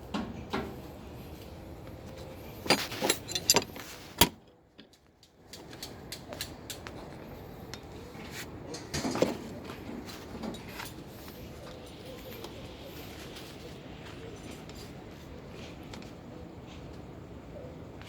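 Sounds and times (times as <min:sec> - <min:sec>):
metal clinks and knocks: 0:02.5 - 0:03.9.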